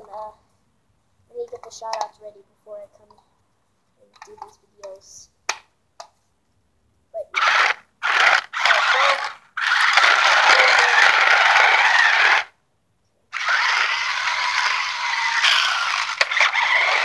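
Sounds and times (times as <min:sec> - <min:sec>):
toy car motor whirring: 0:07.4 - 0:12.6, 0:13.3 - 0:17.0.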